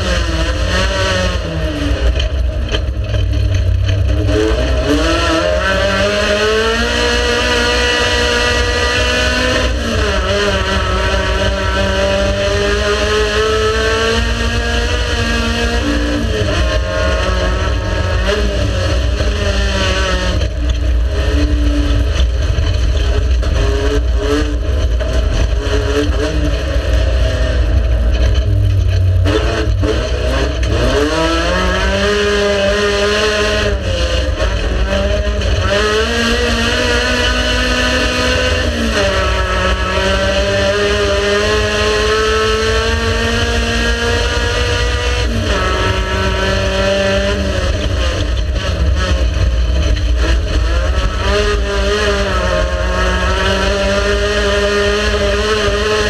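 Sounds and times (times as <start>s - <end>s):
race car engine accelerating: 0.0s - 56.0s
heavy low rumble: 15.2s - 30.8s.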